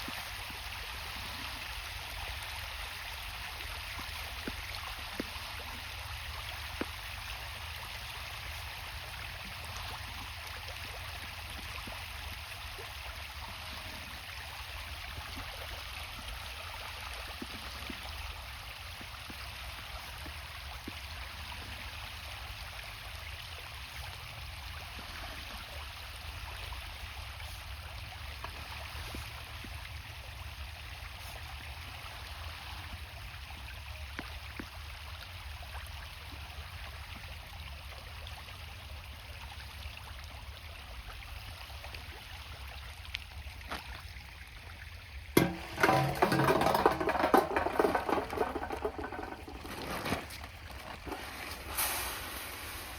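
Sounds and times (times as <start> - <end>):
running water rushing: 43.4 - 52.9.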